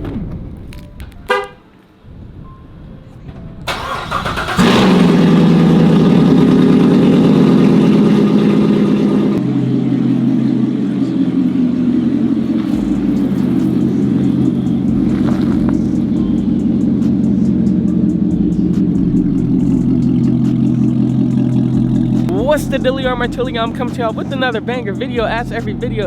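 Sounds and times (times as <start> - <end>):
car horn chirp: 1.2 - 1.7
car engine running: 3.6 - 26.0.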